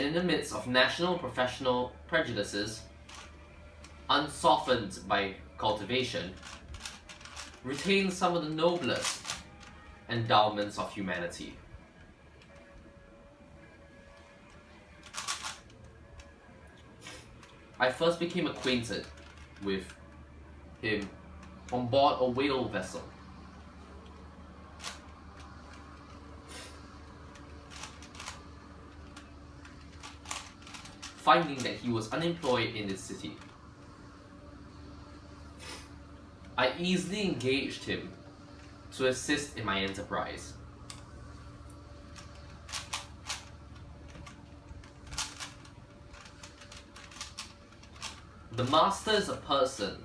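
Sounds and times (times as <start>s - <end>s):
low hum: 0.0s - 50.0s
puzzle cube clicks: 6.3s - 9.7s, 15.0s - 15.7s, 27.3s - 28.4s, 29.1s - 31.8s, 42.2s - 43.5s, 44.1s - 49.0s.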